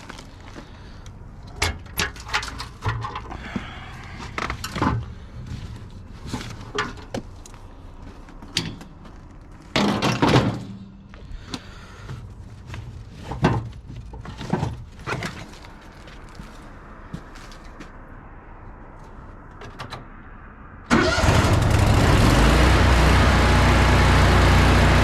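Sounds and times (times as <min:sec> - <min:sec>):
metal knocks and clanks: 0:08.4 - 0:11.0.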